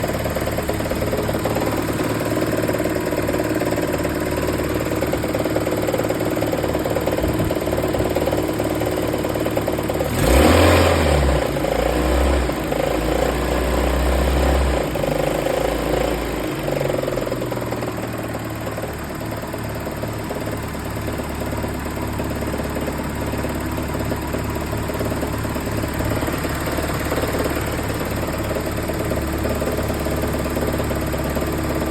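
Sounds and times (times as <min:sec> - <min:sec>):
engine idling with a knock: 0:00.0 - 0:09.8.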